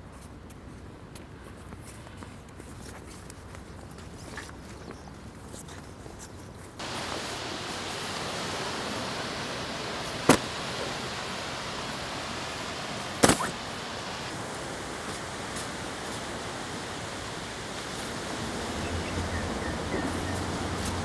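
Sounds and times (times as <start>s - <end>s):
surf rushing on a beach: 6.8s - 21.0s.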